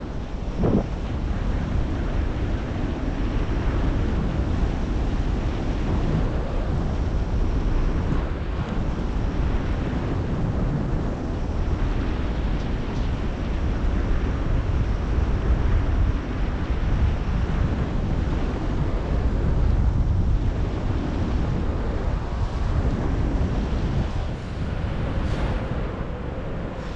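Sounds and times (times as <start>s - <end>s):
wind buffeting microphone: 0.0s - 26.9s.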